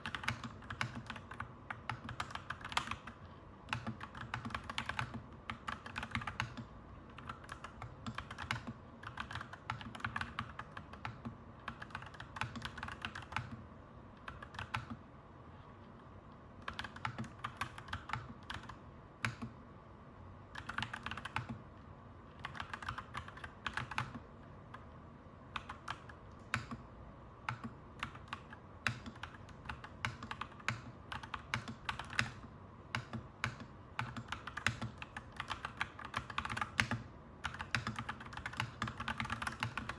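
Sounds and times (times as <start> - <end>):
mechanical keyboard typing: 0.0 - 15.0, 16.6 - 19.6, 20.5 - 21.6, 22.3 - 24.9, 25.5 - 26.8, 27.4 - 39.9
low background hum: 0.0 - 39.9.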